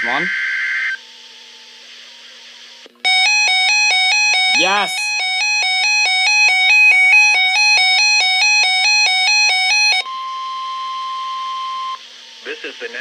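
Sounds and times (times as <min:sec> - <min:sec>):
alternating electronic alarm beeps: 0:03.0 - 0:13.0
steady radio alert tone: 0:03.1 - 0:13.0.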